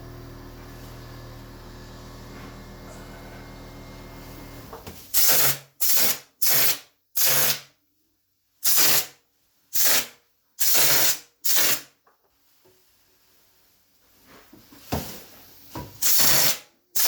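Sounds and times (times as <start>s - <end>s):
hissing spray bursts: 5.1s - 7.6s, 8.6s - 9.1s, 9.7s - 11.9s, 16.0s - 17.0s.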